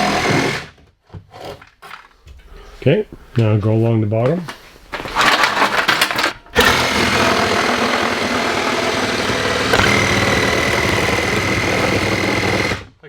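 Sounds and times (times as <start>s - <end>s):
power saw cutting plywood: 0.0s - 0.8s, 6.6s - 13.0s.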